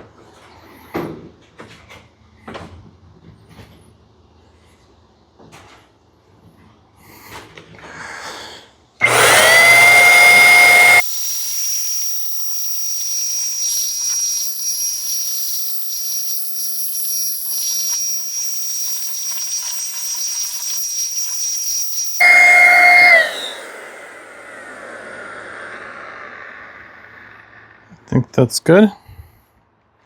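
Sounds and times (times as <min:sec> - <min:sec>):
sprayer hissing: 0:09.0 - 0:27.9
electric paint sprayer whining: 0:09.0 - 0:28.0.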